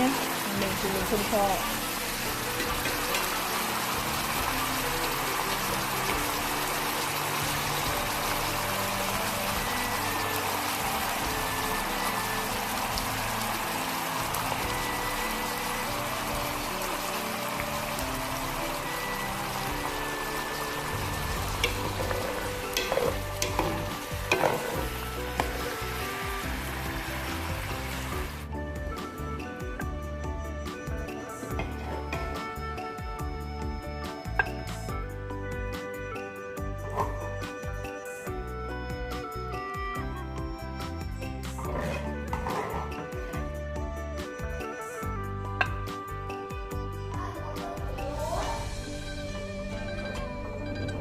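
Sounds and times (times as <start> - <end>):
pot simmering with bubbling hiss: 0.0 - 28.5
utensil clinking against pan: 21.6 - 24.8.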